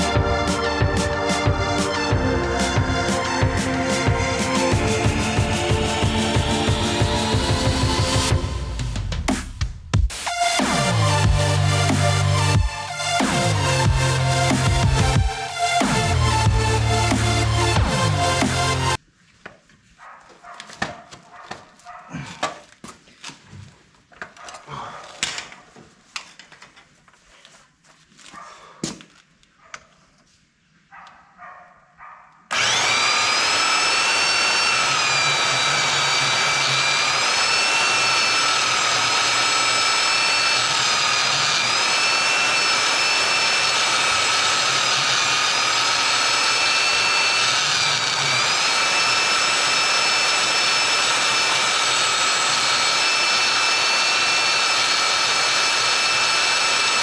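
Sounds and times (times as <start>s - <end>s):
electric power tool whining: 0.0s - 9.0s, 10.4s - 19.0s, 32.5s - 57.0s.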